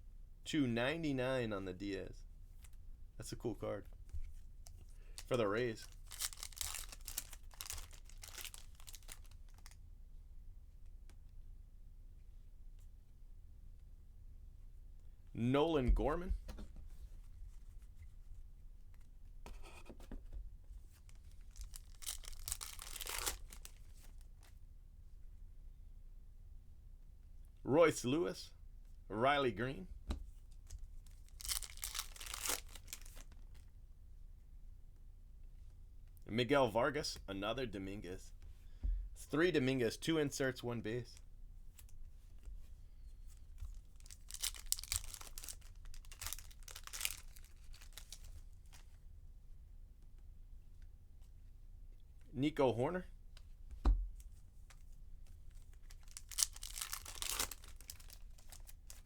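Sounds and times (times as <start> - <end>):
wrapper tearing and crinkling: 5.2 - 9.8, 21.1 - 24.2, 31.1 - 33.5, 44.0 - 48.8, 55.7 - 59.0.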